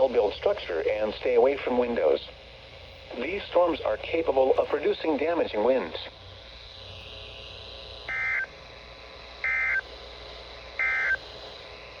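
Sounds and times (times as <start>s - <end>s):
faint radio hiss: 0.0s - 12.0s
data tone bursts: 9.4s - 9.8s, 10.8s - 11.2s.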